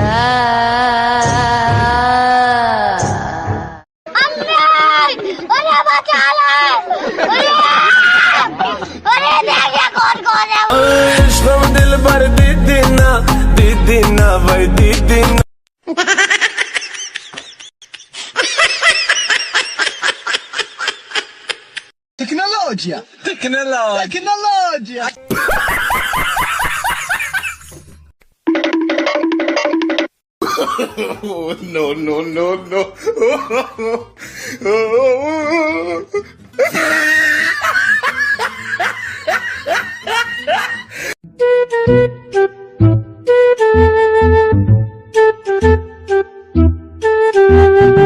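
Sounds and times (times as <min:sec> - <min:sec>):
high-pitched giggling laughter: 0:15.8 - 0:21.8, 0:36.6 - 0:40.9.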